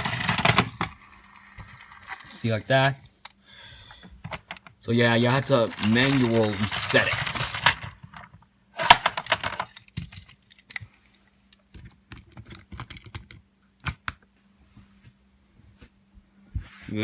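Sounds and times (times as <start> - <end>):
plastic toy pieces clicking and rattling: 0.0 - 3.0, 4.2 - 13.4.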